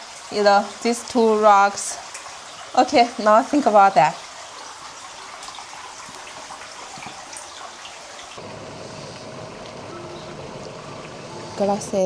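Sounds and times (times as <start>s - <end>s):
water trickling: 0.0s - 12.0s.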